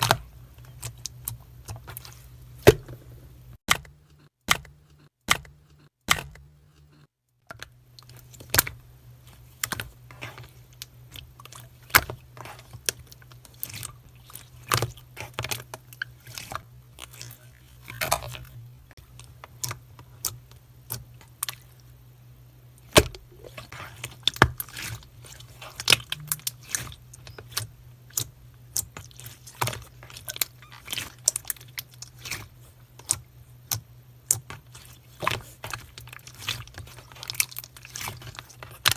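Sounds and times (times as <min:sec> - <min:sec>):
steady low hum: 0:07.8 - 0:38.9.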